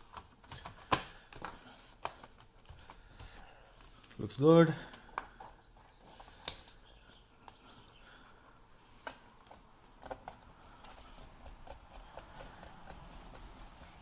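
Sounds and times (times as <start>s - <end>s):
faint clicks and taps: 0.0s - 4.2s, 9.0s - 14.0s.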